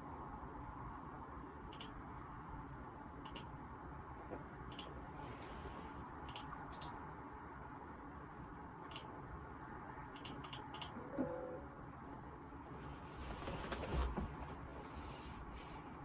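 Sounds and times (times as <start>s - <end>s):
keyboard and mouse clicks: 1.7s - 2.1s, 3.2s - 3.5s, 4.7s - 4.9s, 6.2s - 7.0s, 8.9s - 9.1s, 10.1s - 11.0s.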